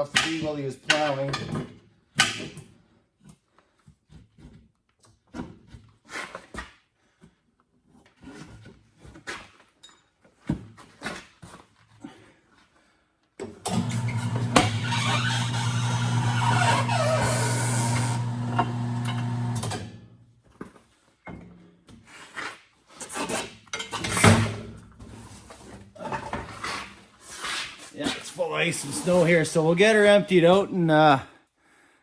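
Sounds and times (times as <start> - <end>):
machine motor humming: 13.7 - 19.9.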